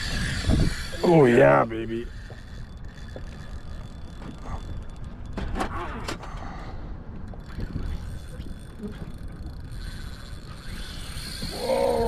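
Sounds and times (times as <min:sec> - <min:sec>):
fishing reel drag running: 0:00.0 - 0:05.4, 0:07.2 - 0:12.0
sharp reel clicks: 0:07.4 - 0:11.8.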